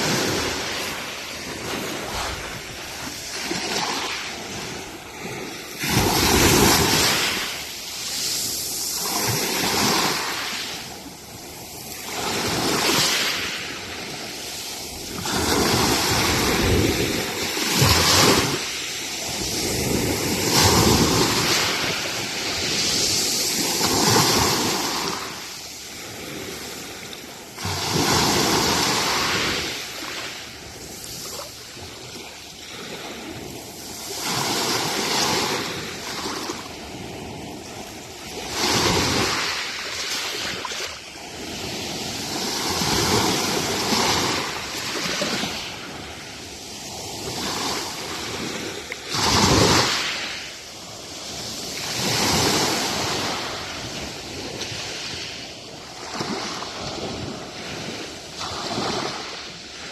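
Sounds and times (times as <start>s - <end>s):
wind on microphone: 0.0s - 39.6s
waves breaking on beach: 0.0s - 59.9s.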